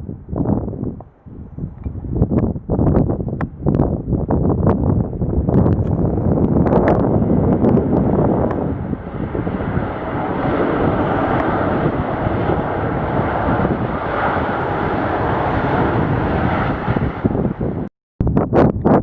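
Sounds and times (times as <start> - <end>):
jet engines roaring: 5.1 - 17.9.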